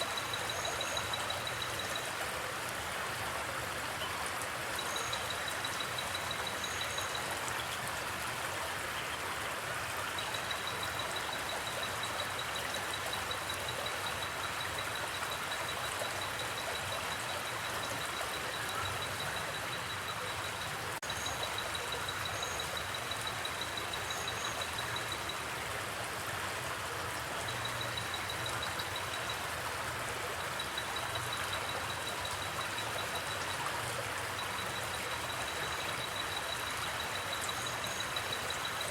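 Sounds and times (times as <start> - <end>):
cricket trilling: 0.0 - 2.0
stream flowing: 0.0 - 38.9.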